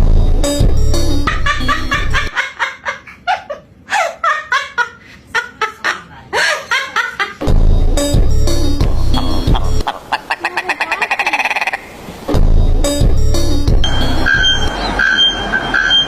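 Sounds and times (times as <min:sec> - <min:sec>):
heavy bass music beat: 0:00.0 - 0:02.3, 0:07.4 - 0:10.0, 0:12.3 - 0:16.0
bird laugh-like calls: 0:09.5 - 0:12.0.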